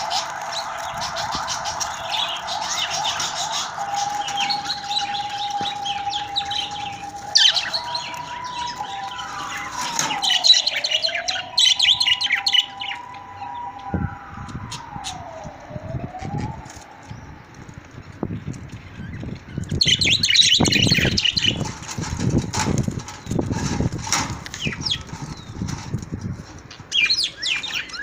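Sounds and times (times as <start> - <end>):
budgerigars chirping and chattering: 0.0 - 13.0, 18.7 - 21.8, 26.7 - 28.0
distant siren-like tone: 0.0 - 18.8, 19.8 - 25.6.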